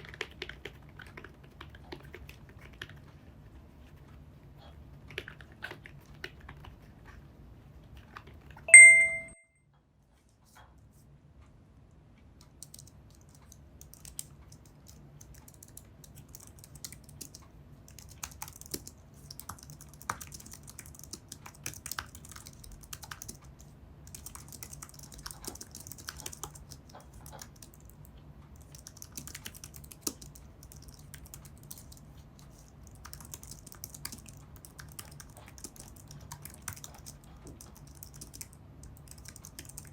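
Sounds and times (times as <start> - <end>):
bright ding: 8.7 - 9.4.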